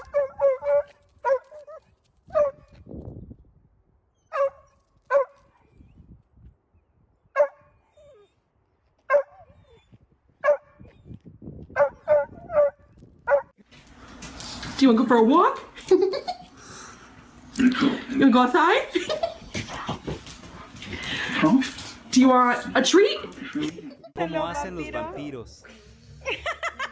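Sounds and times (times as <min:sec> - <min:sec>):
dog barking: 0:04.3 - 0:05.4, 0:07.4 - 0:07.7, 0:09.1 - 0:09.5, 0:10.4 - 0:10.8, 0:11.8 - 0:13.5.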